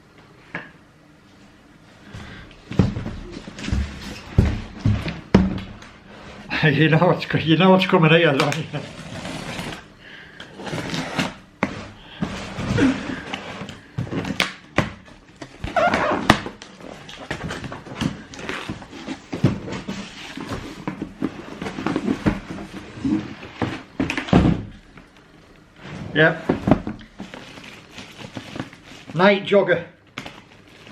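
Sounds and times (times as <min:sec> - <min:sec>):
cardboard box rustling and scraping: 0:08.6 - 0:09.9, 0:15.6 - 0:24.0.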